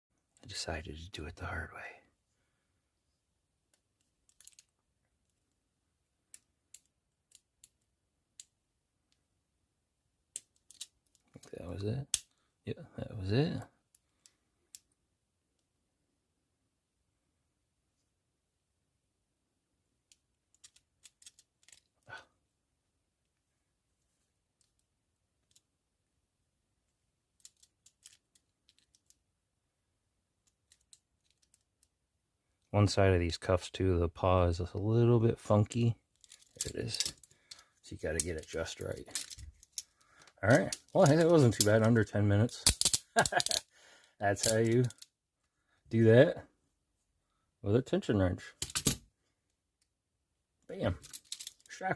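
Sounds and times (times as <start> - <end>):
lock pick clicking in lock: 42.6 - 43.6.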